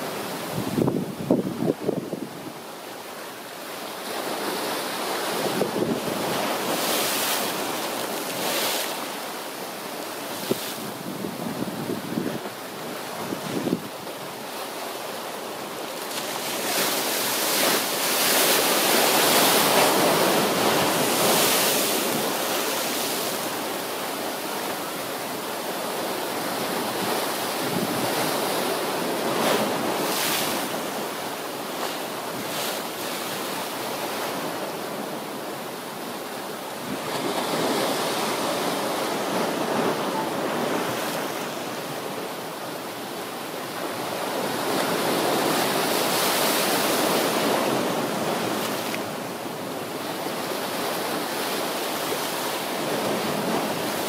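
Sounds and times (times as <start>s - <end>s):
wind gusting against microphone: 0.0s - 2.7s, 10.2s - 14.0s, 26.6s - 31.0s
heavy surf breaking: 0.0s - 54.0s.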